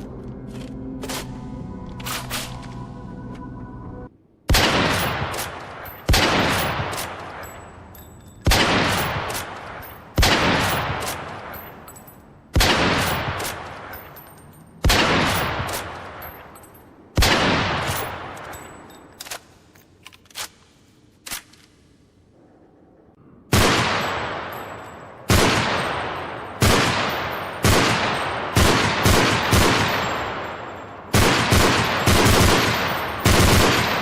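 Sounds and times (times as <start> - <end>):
gunshots with echo: 4.5 - 7.5, 8.4 - 11.6, 12.6 - 14.0, 14.8 - 16.2, 23.5 - 34.0.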